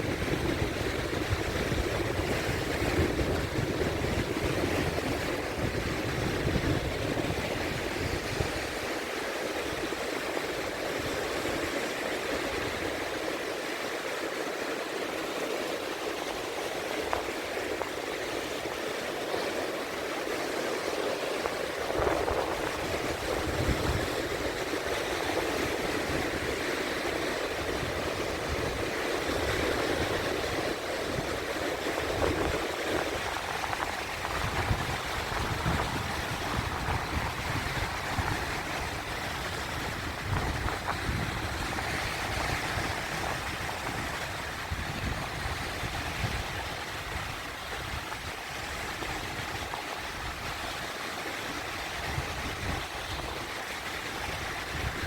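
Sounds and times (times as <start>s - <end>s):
waves washing over rocks: 0.0s - 55.0s.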